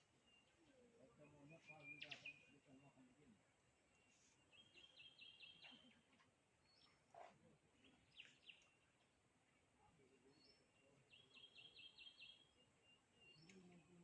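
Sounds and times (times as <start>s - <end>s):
bird chirps: 0.0s - 14.0s
bird trill: 1.5s - 2.8s, 4.5s - 6.0s, 10.4s - 13.6s.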